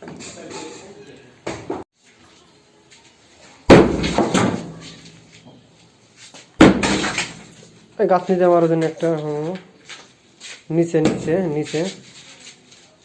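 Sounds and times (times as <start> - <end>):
heavy impacts on concrete: 3.7 - 5.2, 6.6 - 7.7, 11.0 - 12.0.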